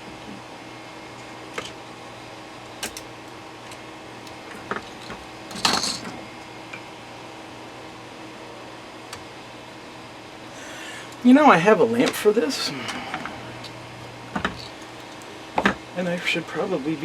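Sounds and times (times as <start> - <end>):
steady low hum: 0.0 - 17.0
clattering rattle: 4.7 - 6.2.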